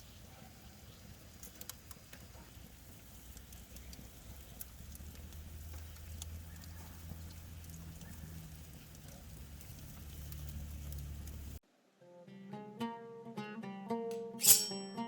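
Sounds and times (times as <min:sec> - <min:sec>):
charcoal fire crackling: 0:00.0 - 0:11.6.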